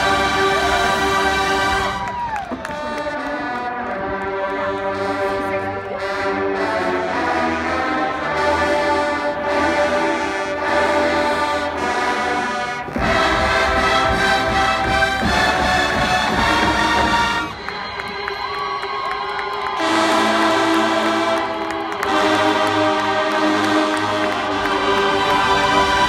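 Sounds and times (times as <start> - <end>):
marching band brass chords: 0.0 - 26.0
band drums: 12.8 - 18.0.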